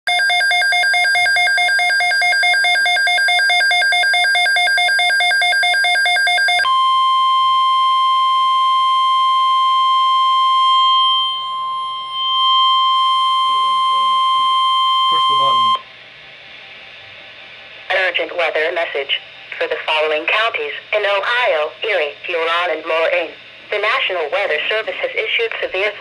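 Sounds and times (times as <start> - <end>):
electronic alert tone: 2.3 - 15.8.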